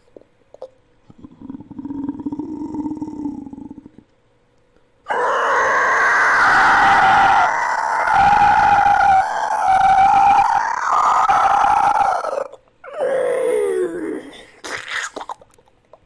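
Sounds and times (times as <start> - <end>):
monster low growl: 1.1 - 4.0, 7.2 - 15.2
shrill screeching cry: 5.1 - 13.8.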